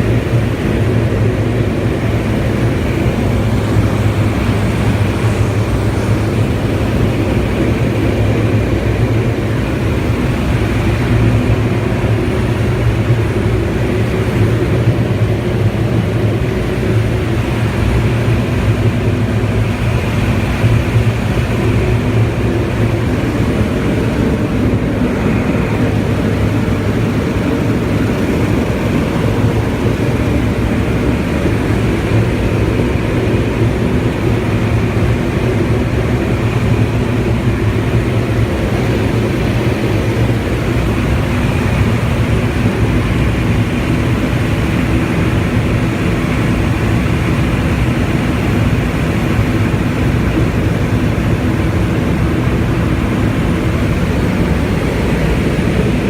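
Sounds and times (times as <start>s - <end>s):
turboprop engine running steadily: 0.0s - 56.0s.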